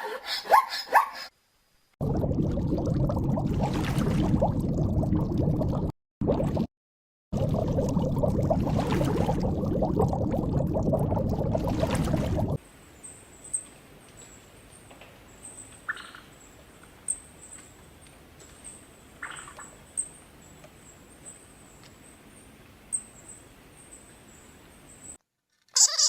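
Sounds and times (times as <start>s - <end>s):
short animal calls: 25.8s - 26.0s.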